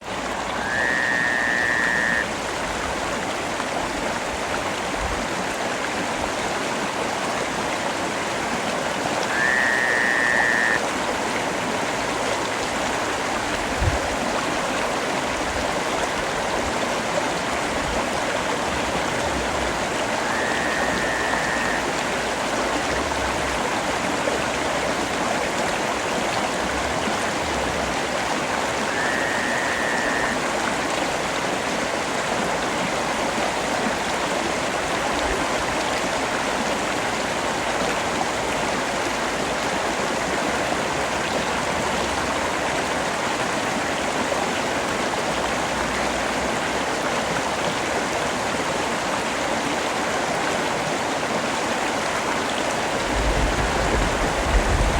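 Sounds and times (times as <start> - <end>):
steady rain: 0.0 - 54.9
short high call: 0.5 - 2.3, 9.3 - 10.8, 20.2 - 21.9, 28.9 - 30.4.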